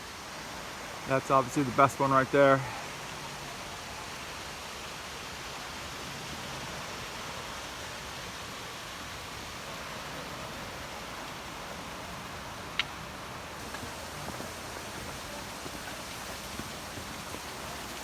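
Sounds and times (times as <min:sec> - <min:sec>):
waterfall pouring: 0:08.4 - 0:18.0.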